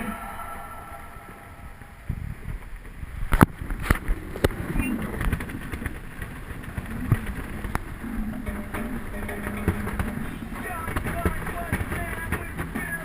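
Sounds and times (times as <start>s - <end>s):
wind buffeting microphone: 0.8s - 13.0s
sharp knocks and bangs: 8.0s - 13.0s.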